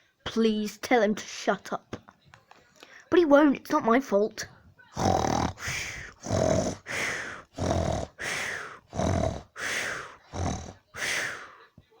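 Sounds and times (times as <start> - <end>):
person snoring: 5.0 - 11.5.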